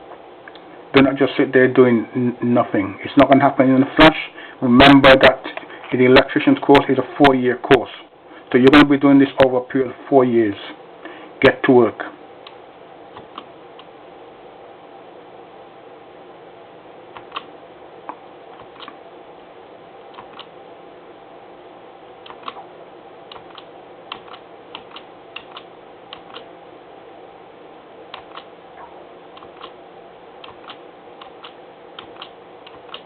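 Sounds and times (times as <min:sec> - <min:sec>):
steady hum with hiss: 0:00.0 - 0:33.0.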